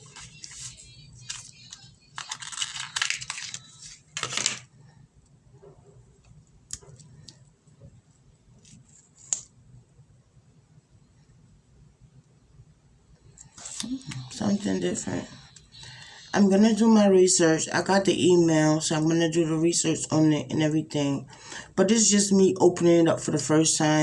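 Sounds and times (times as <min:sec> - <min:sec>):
packaging crinkling and tearing: 0:00.0 - 0:04.7.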